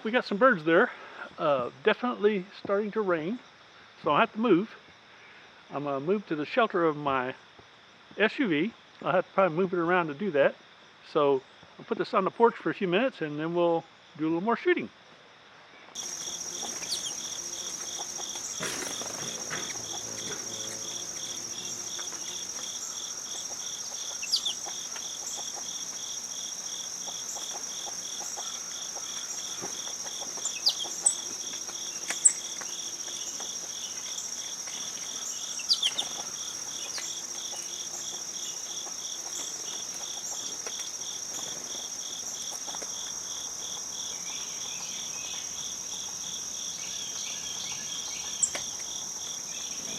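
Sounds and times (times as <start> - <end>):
falling bird chirps: 16.0 - 41.6
high shrill insect trill: 16.0 - 49.9
low pulsing insect trill: 16.0 - 49.9.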